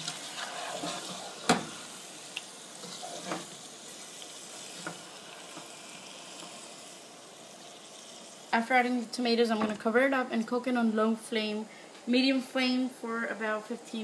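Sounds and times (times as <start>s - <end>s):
food sizzling in a frying pan: 0.0s - 11.1s.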